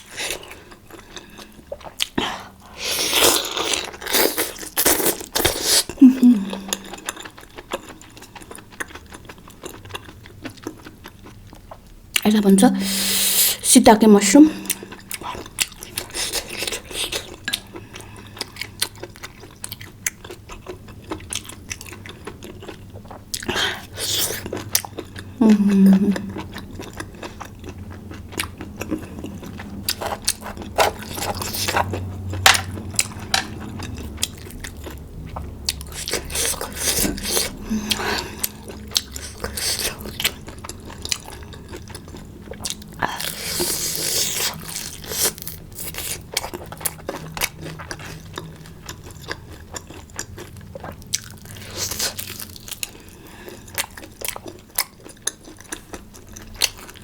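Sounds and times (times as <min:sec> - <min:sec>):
biting and chewing food: 0:26.2 - 0:57.0
slurping: 0:28.8 - 0:33.4.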